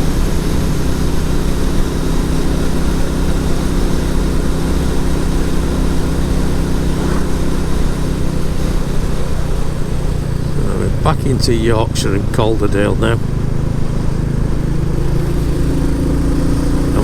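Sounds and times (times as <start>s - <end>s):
motorcycle engine running: 0.0s - 17.0s
wind and road noise: 0.0s - 17.0s.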